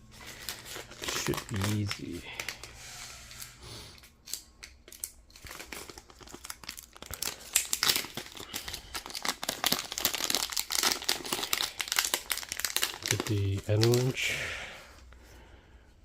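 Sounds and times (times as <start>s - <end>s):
plastic packaging crinkling: 0.0s - 3.6s, 4.2s - 14.3s.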